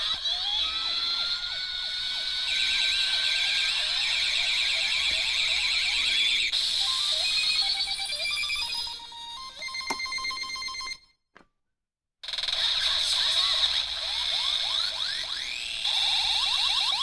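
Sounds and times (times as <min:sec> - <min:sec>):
fast warbling electronic beeps: 0:02.1 - 0:09.3, 0:12.3 - 0:17.0.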